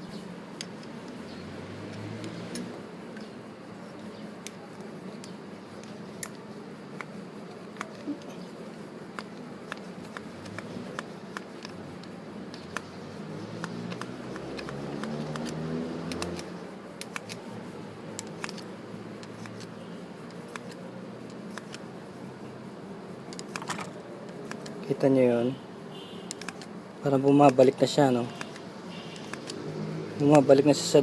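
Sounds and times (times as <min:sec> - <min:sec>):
clicks of metal parts handled: 0:23.3 - 0:24.8.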